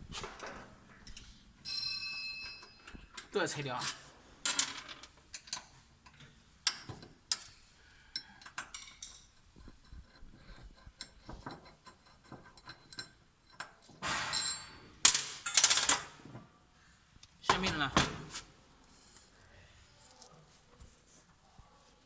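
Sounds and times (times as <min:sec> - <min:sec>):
tools clicking and clinking: 0:00.2 - 0:09.4.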